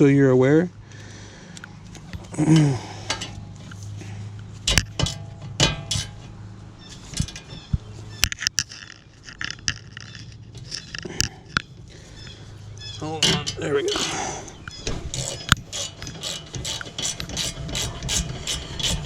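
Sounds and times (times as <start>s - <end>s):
tools clinking on metal: 13.2s - 14.2s.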